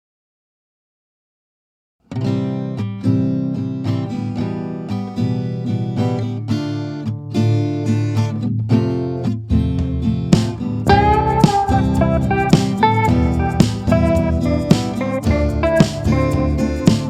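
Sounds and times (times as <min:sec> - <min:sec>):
acoustic guitar picked and strummed: 0:02.0 - 0:17.0.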